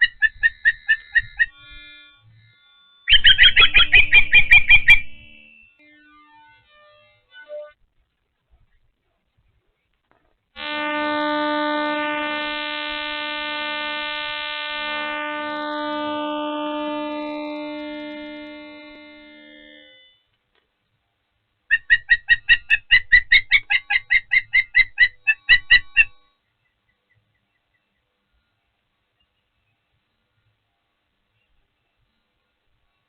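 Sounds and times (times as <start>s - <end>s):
osprey chirping: 0.0s - 6.0s, 21.7s - 28.0s
steady hum rich in overtones: 0.0s - 33.0s.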